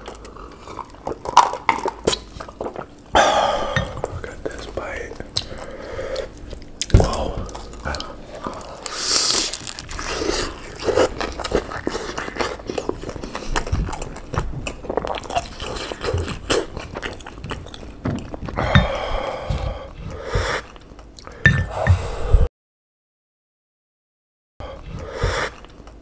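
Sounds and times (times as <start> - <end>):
wet chewing sounds: 0.0 - 3.1, 3.9 - 18.6.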